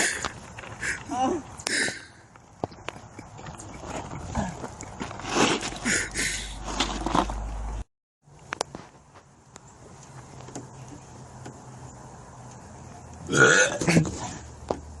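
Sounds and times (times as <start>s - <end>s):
person belching loudly: 13.3s - 14.0s.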